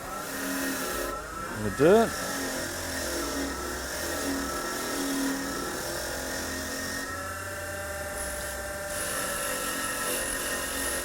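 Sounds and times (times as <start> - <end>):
wire buff wheel motor whine: 0.0 - 11.0.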